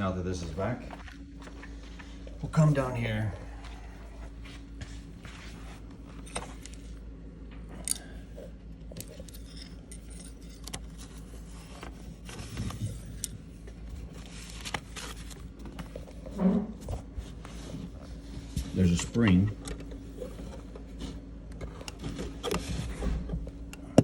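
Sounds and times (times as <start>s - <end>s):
steady low hum: 0.0s - 24.0s.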